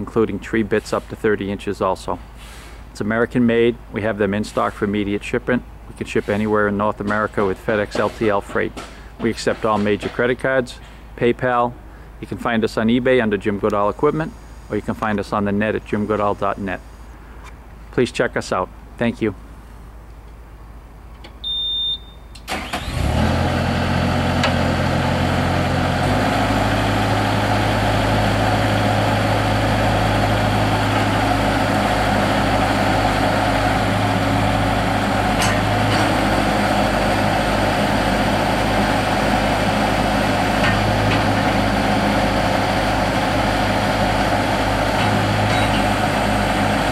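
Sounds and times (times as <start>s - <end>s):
short high beep: 21.4s - 22.4s
loader engine running: 22.5s - 46.9s.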